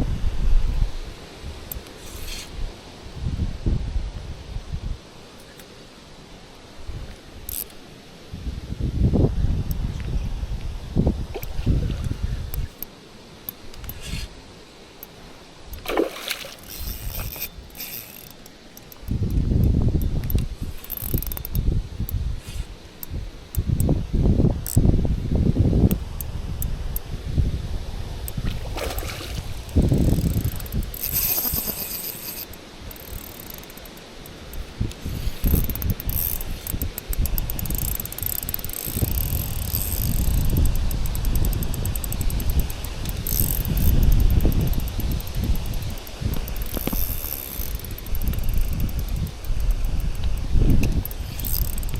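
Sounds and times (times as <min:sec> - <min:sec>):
wind buffeting microphone: 0:00.0 - 0:01.8, 0:02.5 - 0:05.1, 0:08.3 - 0:12.7, 0:19.0 - 0:31.8, 0:32.8 - 0:51.9
fishing reel gears ticking: 0:07.5 - 0:07.8, 0:15.0 - 0:22.2, 0:23.0 - 0:24.9, 0:29.6 - 0:51.9
small clicks: 0:07.5 - 0:07.8, 0:15.0 - 0:21.7, 0:24.6 - 0:24.8, 0:29.6 - 0:51.9
water sloshing: 0:15.1 - 0:19.1, 0:28.3 - 0:31.7
short splash: 0:15.8 - 0:16.7.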